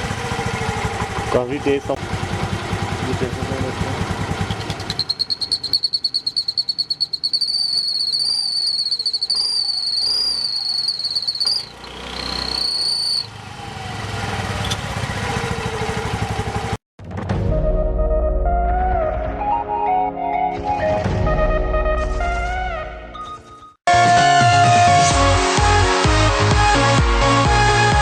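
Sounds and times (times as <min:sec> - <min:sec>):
scooter engine revving: 0:00.0 - 0:16.8
exhaust whistle whine: 0:04.3 - 0:16.8.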